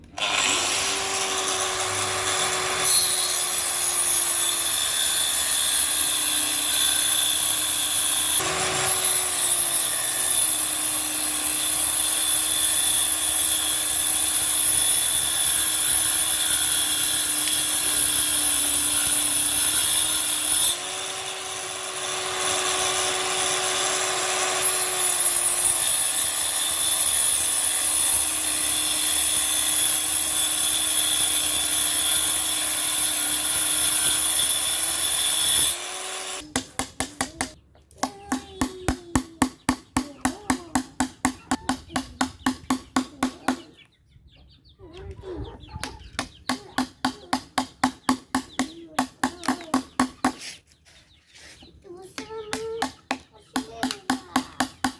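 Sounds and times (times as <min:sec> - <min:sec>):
power tool motor whine: 0:00.0 - 0:36.4.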